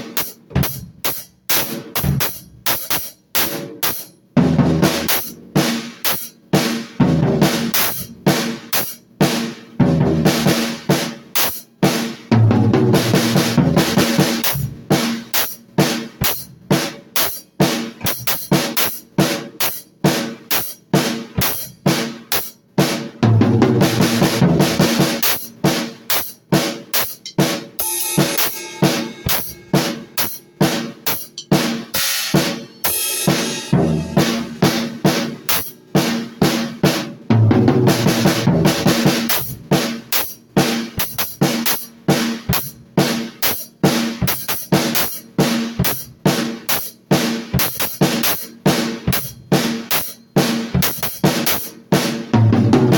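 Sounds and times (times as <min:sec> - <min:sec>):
drum kit playing: 0:00.0 - 0:52.9
cymbal crashes: 0:27.8 - 0:36.2.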